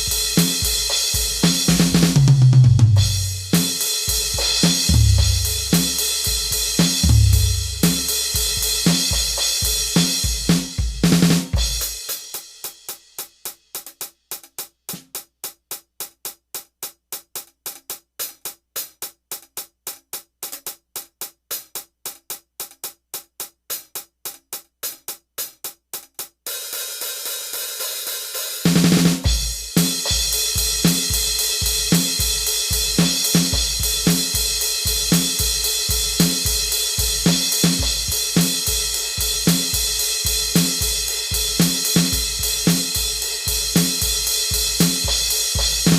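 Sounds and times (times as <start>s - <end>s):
rock drum kit playing: 0.0s - 15.2s, 24.9s - 45.9s.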